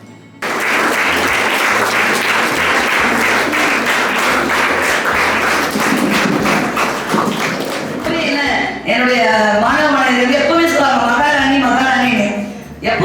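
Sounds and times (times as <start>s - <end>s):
audience applauding: 0.4s - 8.5s.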